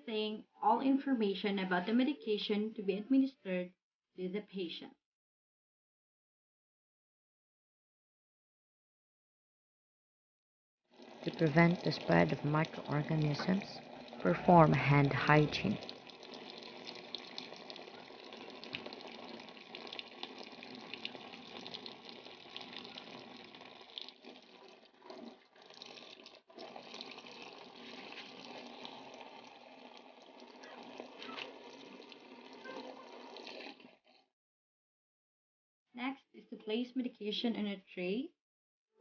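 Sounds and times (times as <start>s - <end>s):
tap water running into sink: 10.9s - 34.0s.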